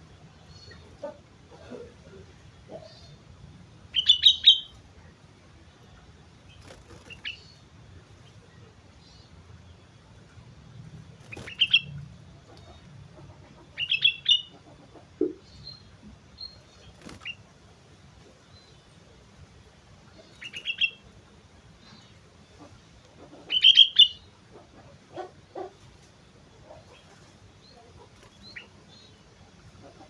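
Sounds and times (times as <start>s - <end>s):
bulbul singing bright phrases: 3.9s - 4.8s.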